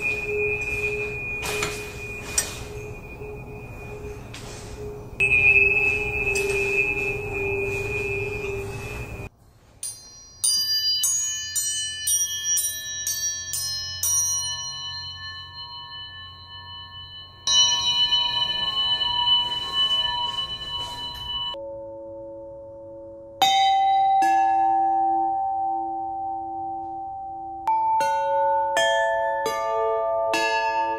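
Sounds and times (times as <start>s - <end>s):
metal bells struck ringing: 0.0s - 21.6s.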